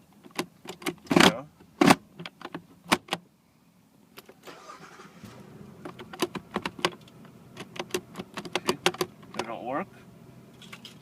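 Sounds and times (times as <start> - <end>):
car engine idling: 4.5 - 11.0
plastic shift lever clicks: 5.8 - 9.5.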